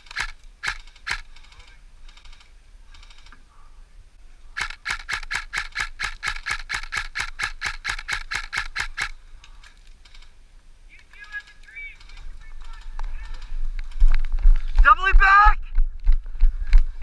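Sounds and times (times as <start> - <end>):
airsoft gun shots: 4.6 - 9.1.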